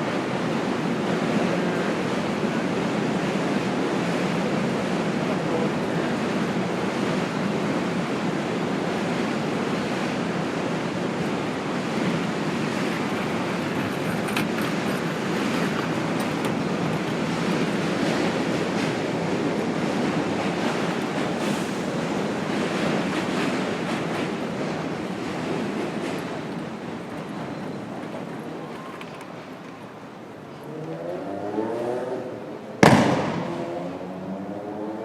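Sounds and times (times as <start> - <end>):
city street traffic roar: 0.0 - 35.0.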